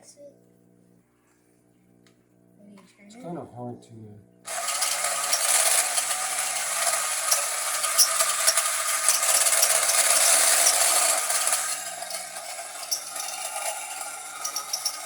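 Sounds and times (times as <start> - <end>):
toy motor and gears grinding: 4.5 - 15.0.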